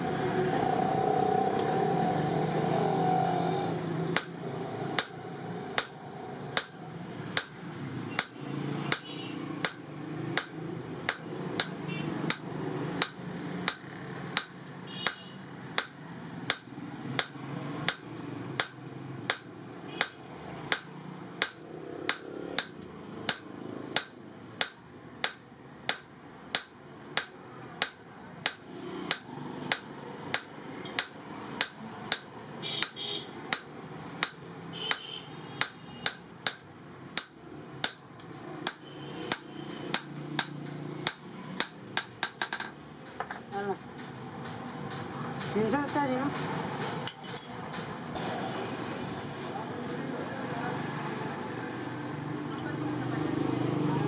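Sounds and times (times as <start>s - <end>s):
hammer striking steel on anvil: 24.0s - 43.3s.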